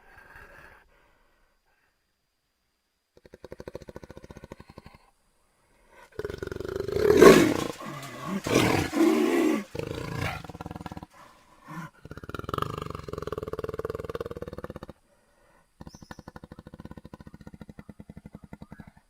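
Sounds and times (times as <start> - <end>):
jaguar pulsing growl: 5.9 - 15.1
jaguar roaring: 6.2 - 14.9.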